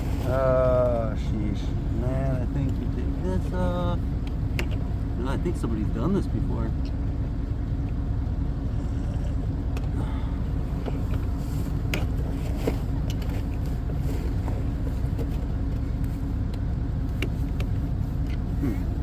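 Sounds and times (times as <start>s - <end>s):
steady low rumble: 0.0s - 19.0s.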